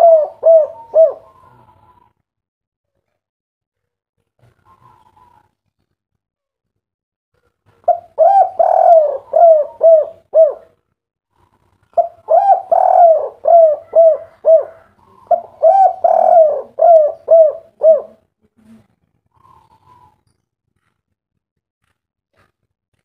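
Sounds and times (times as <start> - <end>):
dove cooing: 0.0 - 2.1, 4.6 - 5.4, 7.8 - 10.8, 11.4 - 18.3, 19.3 - 20.2.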